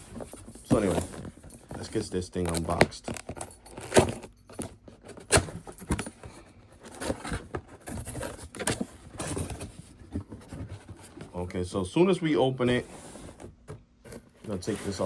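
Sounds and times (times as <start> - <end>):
packaging rustling: 0.0 - 11.4
cardboard box clicks and knocks: 0.1 - 11.3.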